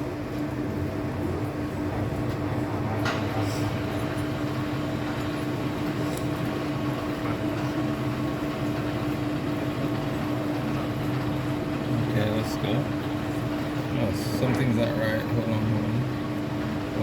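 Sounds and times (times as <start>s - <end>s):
metal lathe humming: 3.7s - 17.0s.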